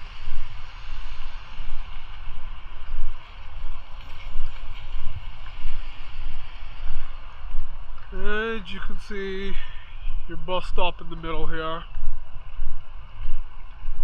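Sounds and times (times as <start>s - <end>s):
vehicles hissing on wet road: 0.0s - 10.3s
wind buffeting microphone: 0.0s - 14.0s.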